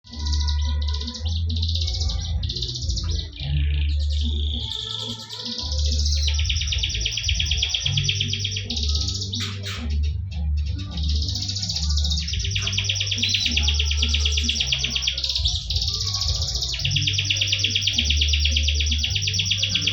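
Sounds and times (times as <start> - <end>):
background music with low bass: 0.0 - 19.9
canary singing in trills: 0.0 - 19.9.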